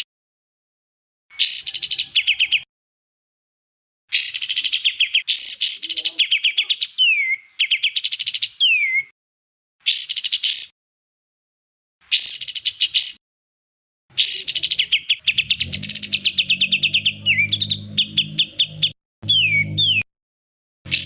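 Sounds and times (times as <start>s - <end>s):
songbird chirping: 1.3s - 2.7s, 4.1s - 9.1s, 14.1s - 20.1s
low hum: 15.3s - 20.0s.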